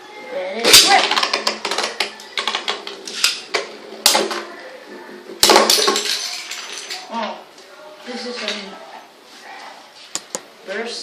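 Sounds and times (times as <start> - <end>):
spinning tops clacking together: 5.4 - 7.1.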